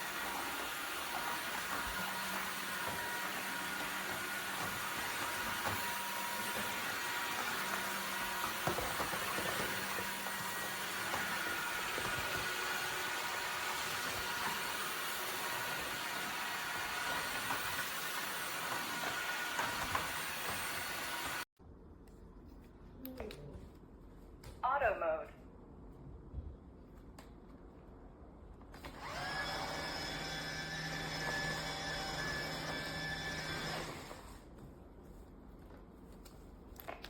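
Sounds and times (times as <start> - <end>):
vacuum mop running: 0.0 - 21.5, 28.7 - 34.5.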